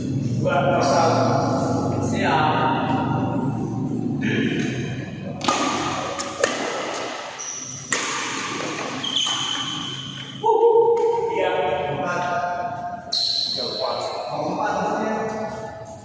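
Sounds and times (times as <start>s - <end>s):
racket hitting shuttlecock: 5.4s - 10.3s
shoe squeaks: 7.3s - 7.9s, 8.9s - 10.4s, 13.0s - 14.4s.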